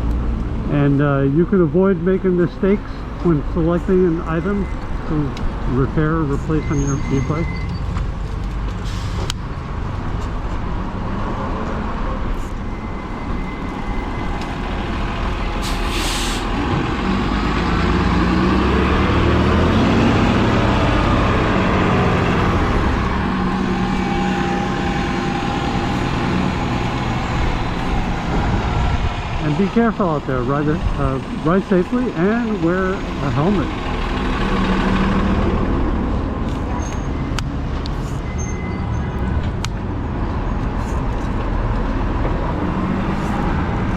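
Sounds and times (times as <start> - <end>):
road traffic: 0.0 - 43.9
heavy vehicle engine passing: 0.6 - 43.9
short hiss of air: 15.6 - 16.5.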